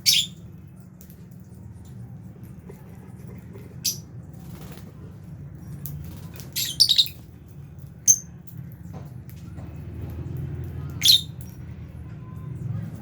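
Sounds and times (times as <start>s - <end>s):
birds chirping: 0.0s - 0.5s, 6.3s - 7.3s, 10.8s - 11.6s.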